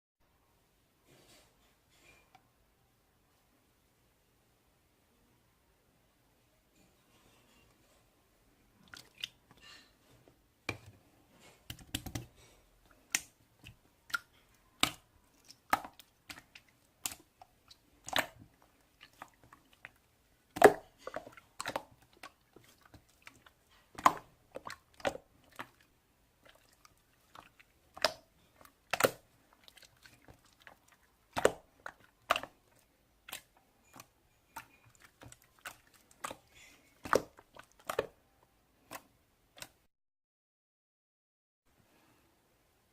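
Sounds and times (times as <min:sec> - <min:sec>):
slime squished by hand: 0:26.4 - 0:38.1.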